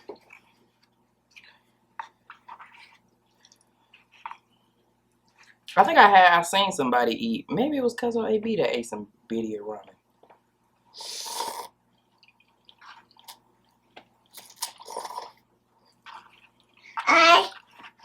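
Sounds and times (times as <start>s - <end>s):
wet chewing and mouth sounds: 0.0s - 5.8s, 10.2s - 18.0s.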